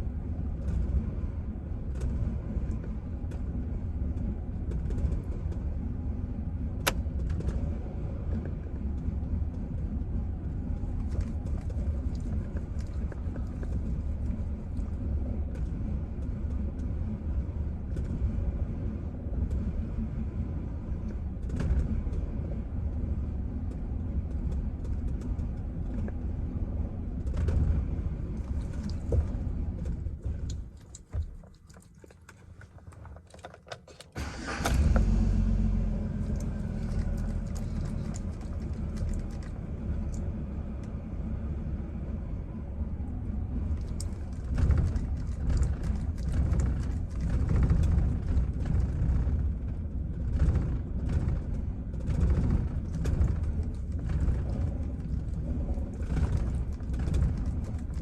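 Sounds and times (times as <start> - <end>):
starter clicking: 30.4 - 35.2
truck engine idling roughly: 34.2 - 40.1.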